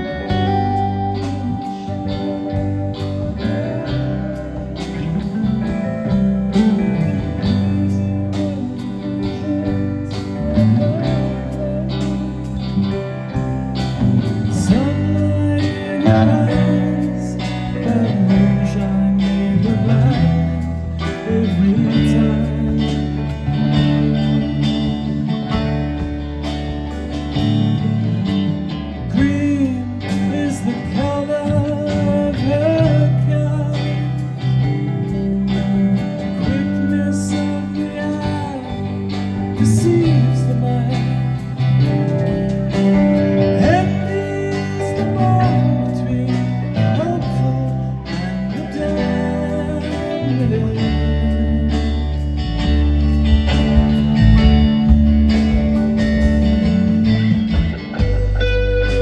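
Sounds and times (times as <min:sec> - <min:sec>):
bass line: 0:00.0 - 0:59.0
lead guitar bending notes: 0:00.0 - 0:59.0
steady drum beat: 0:52.6 - 0:59.0.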